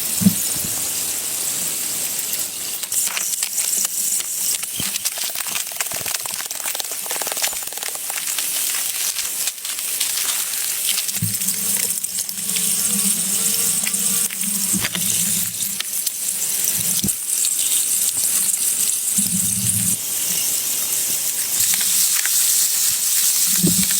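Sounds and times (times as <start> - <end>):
running water hissing: 0.0 - 23.9.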